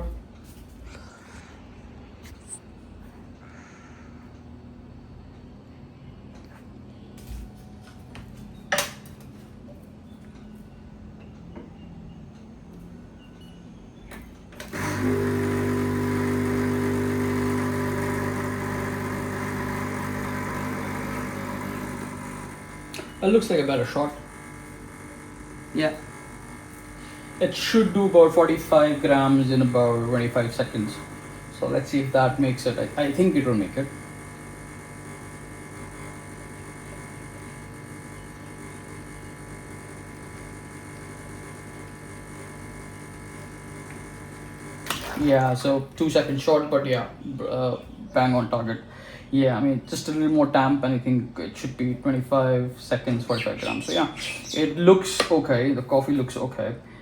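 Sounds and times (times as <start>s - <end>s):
espresso machine pump humming: 14.6s - 45.8s, 53.0s - 54.9s.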